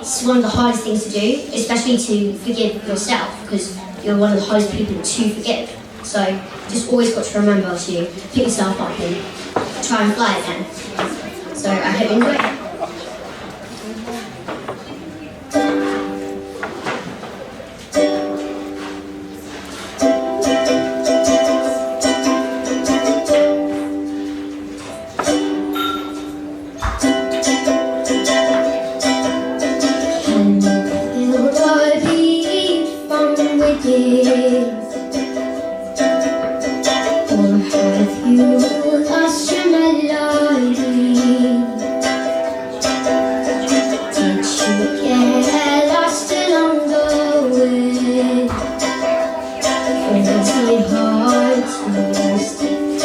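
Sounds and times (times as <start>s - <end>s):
strummed ukulele: 0.0s - 53.0s
woman singing: 29.8s - 35.2s, 36.8s - 42.0s, 44.0s - 53.0s.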